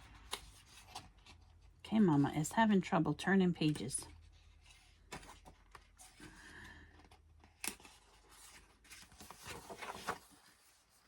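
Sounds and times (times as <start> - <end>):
paper pages rustling: 0.0 - 1.8, 3.6 - 11.0.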